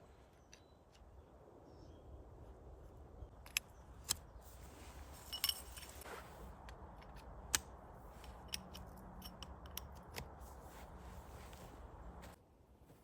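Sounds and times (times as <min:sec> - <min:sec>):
faint low hum: 0:00.0 - 0:13.0
sharp clicks and snaps: 0:03.4 - 0:04.2, 0:06.6 - 0:10.4.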